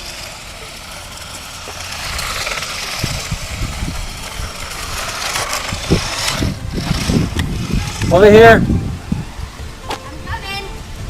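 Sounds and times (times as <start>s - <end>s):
toy car motors whirring: 0.0s - 8.8s
wheels rushing over ground: 0.0s - 11.0s.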